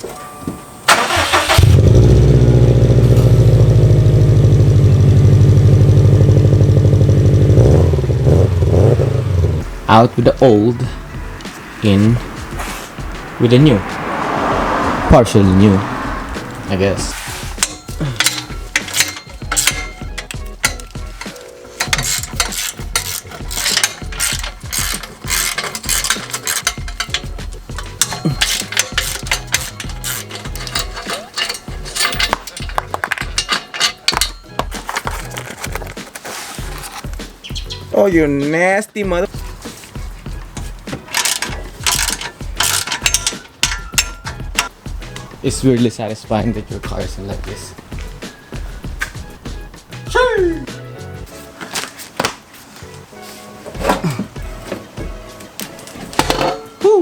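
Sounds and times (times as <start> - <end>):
car engine starting and idling: 0.8 - 21.3
ratchet wrench clicking: 17.6 - 34.6, 41.1 - 44.8.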